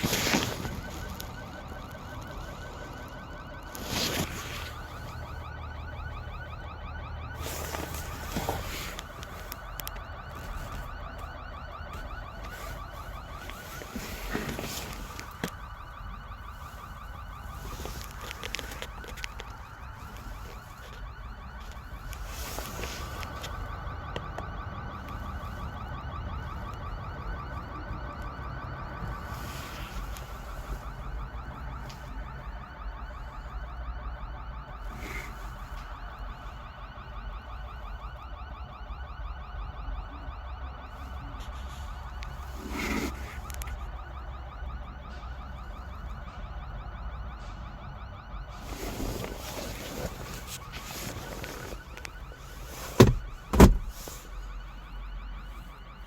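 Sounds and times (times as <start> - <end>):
handling rustles: 0.0 - 5.4, 7.3 - 23.7, 40.9 - 43.8, 48.5 - 54.4
car alarm pulsing tone: 0.0 - 56.0
low wind-like rumble: 0.0 - 56.0.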